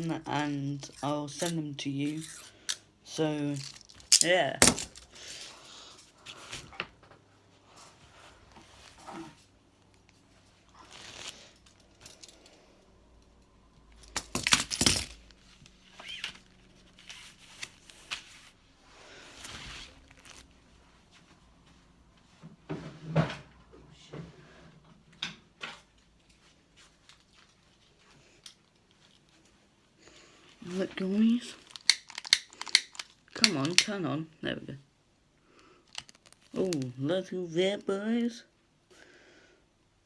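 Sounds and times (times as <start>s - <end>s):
handcuffs and keys clicking: 3.5s - 5.4s, 11.6s - 12.6s, 14.0s - 15.4s, 31.7s - 33.9s.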